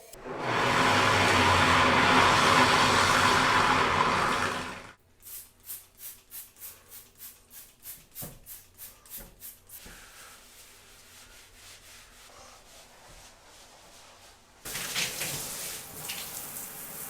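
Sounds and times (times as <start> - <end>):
scrubbing bathtub: 0.1 - 5.0, 8.1 - 17.0
loud rushing noise: 0.2 - 5.0.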